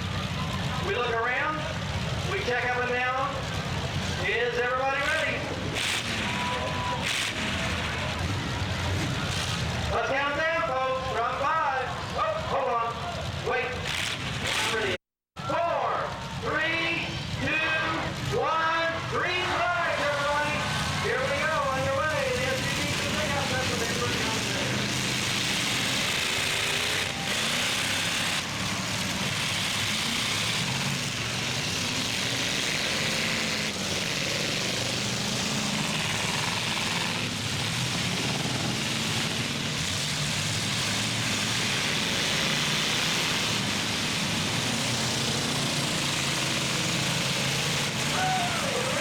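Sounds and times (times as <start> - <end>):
truck engines running loud: 0.0 - 49.0.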